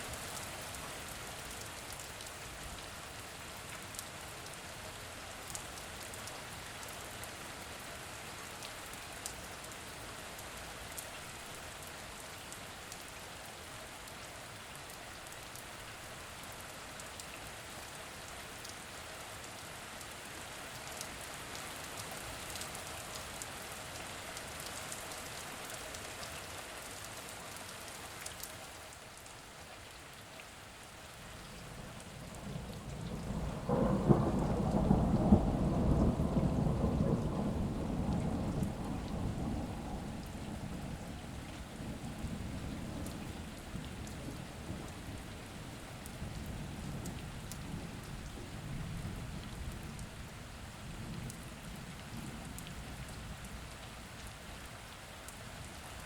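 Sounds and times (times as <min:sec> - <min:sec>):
rain falling: 0:00.0 - 0:56.0
sharp water drips: 0:37.4 - 0:41.7.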